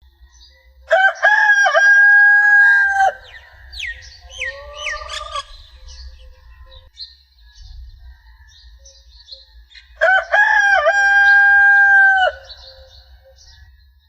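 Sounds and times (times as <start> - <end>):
rooster crowing: 0.9 - 5.6, 10.0 - 13.2
birds whistling: 2.2 - 10.0, 10.9 - 13.9.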